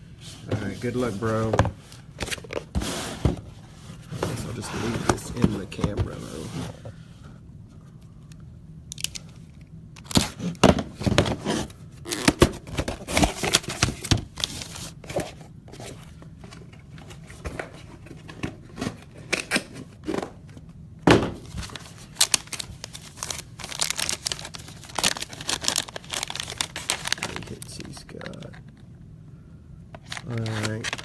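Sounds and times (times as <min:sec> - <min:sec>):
wrapper tearing and crinkling: 0:21.6 - 0:28.4, 0:30.0 - 0:31.0.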